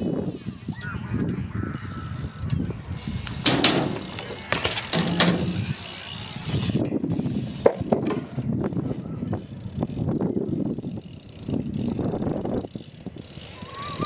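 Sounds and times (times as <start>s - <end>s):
bike tyres rolling on concrete: 0.0s - 14.0s
ratchet hub clicking: 3.0s - 7.9s
loud scraping knocks: 3.4s - 5.8s.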